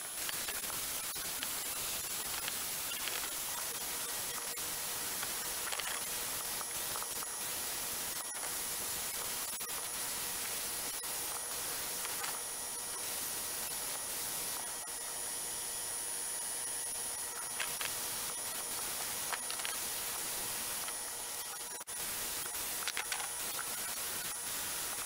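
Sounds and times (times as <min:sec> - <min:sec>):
suction running: 0:00.0 - 0:25.0.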